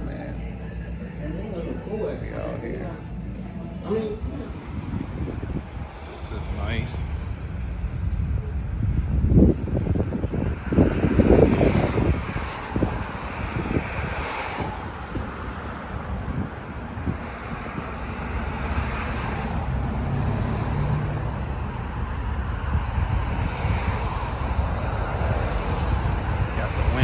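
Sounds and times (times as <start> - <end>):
steady low hum: 0.0 - 10.2
vehicle engine rumble: 0.0 - 27.0
wind buffeting microphone: 2.0 - 27.0.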